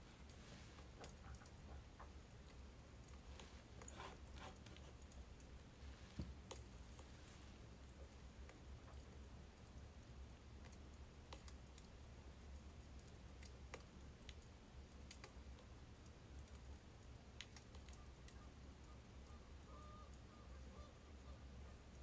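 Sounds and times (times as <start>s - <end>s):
fire crackling and popping: 7.8s - 18.4s.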